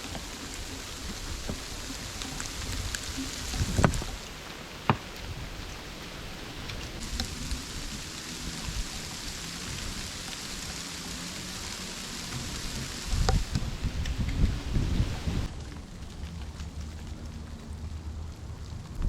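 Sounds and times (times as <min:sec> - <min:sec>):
steady rain falling: 0:00.0 - 0:19.0
low rumbling: 0:05.2 - 0:19.0.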